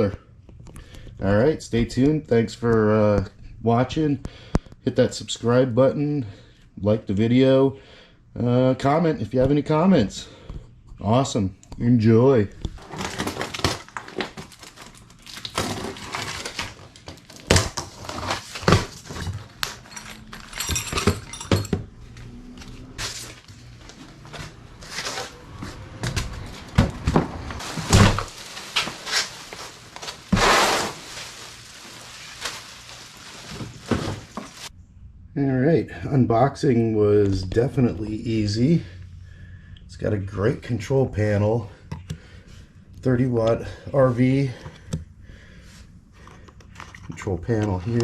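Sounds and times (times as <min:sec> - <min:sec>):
cardboard packaging handled: 0:12.8 - 0:20.0, 0:27.6 - 0:34.7.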